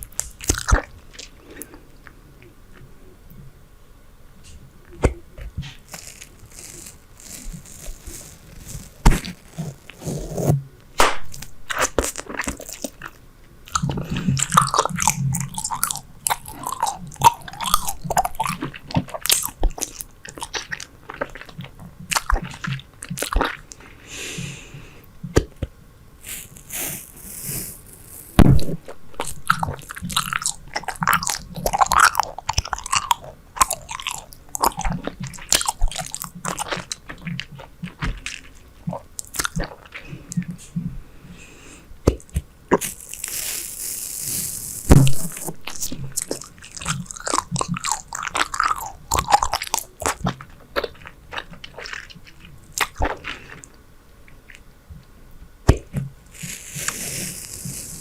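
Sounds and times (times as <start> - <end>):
gum chewing: 0.0 - 1.8, 5.0 - 23.9, 25.3 - 40.9, 42.0 - 54.6
wet mouth smacking and clicking: 11.0 - 23.8, 44.0 - 53.2.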